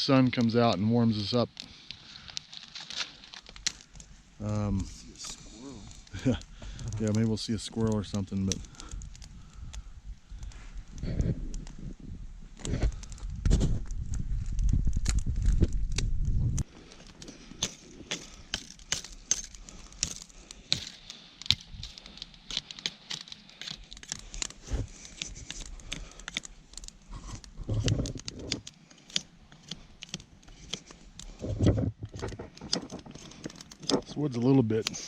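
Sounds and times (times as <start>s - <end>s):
branch snapping: 1.6s - 11.7s, 12.6s - 35.0s
knife scraping wood: 17.0s - 34.1s.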